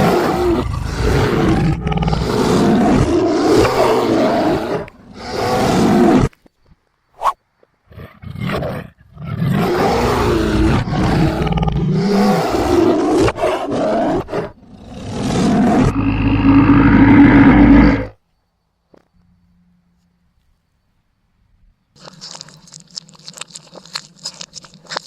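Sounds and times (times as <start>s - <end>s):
tiger roaring: 0.0s - 6.3s, 7.9s - 18.2s.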